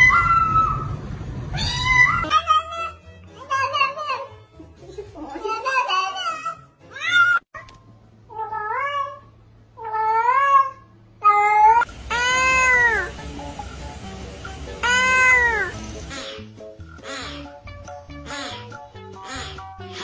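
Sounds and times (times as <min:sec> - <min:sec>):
background music: 0:02.2 - 0:07.4, 0:11.9 - 0:20.0
cat meowing: 0:14.8 - 0:15.7.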